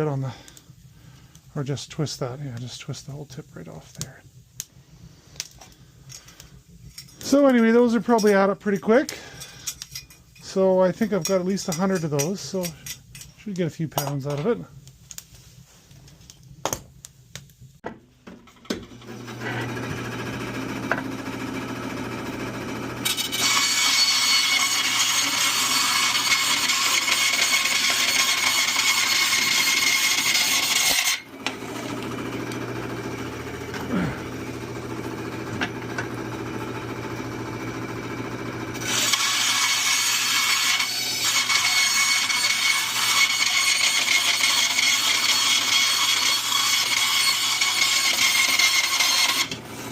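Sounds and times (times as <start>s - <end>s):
bandsaw cutting metal: 18.7s - 21.7s, 22.3s - 49.9s
bandsaw motor humming: 18.9s - 49.9s.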